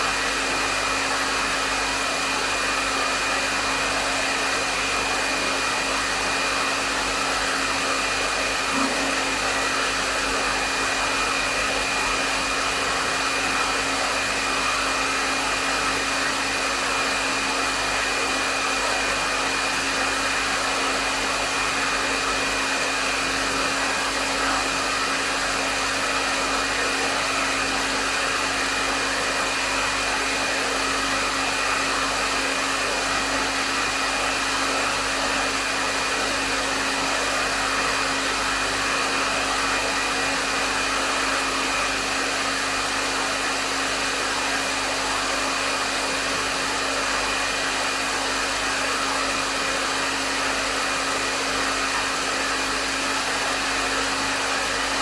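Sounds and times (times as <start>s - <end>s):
hair dryer running: 0.0s - 55.0s.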